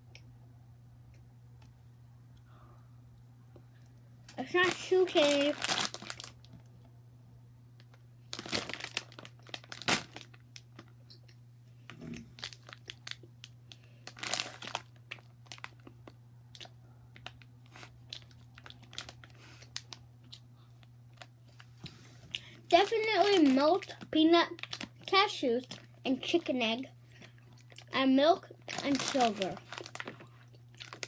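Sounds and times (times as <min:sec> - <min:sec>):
candy wrapper crinkling: 0:04.3 - 0:06.5, 0:08.3 - 0:10.9, 0:12.2 - 0:20.4, 0:22.4 - 0:26.5, 0:28.6 - 0:31.0
candy being chewed: 0:08.3 - 0:26.0, 0:27.1 - 0:28.0, 0:28.6 - 0:31.0.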